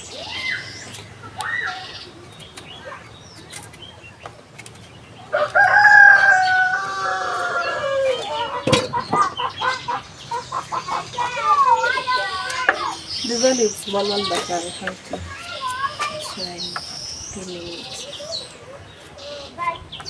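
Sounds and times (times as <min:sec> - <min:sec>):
rooster crowing: 0:05.3 - 0:09.9.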